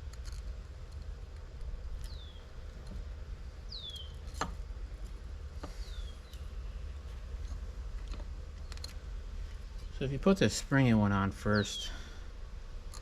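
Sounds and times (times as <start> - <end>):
steady low hum: 0.0 - 13.0
bird chirps sliding downward: 3.7 - 4.2.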